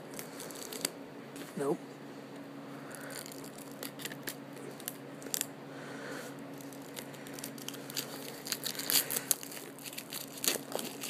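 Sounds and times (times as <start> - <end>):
plastic wrapping crinkling: 0.1 - 1.0, 2.9 - 5.5, 6.5 - 11.0.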